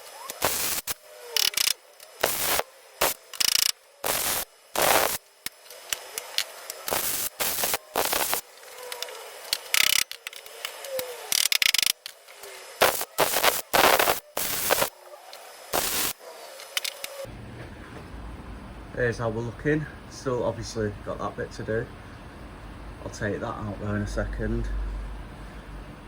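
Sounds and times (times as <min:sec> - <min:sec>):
short bursts of welding: 0:00.0 - 0:17.3.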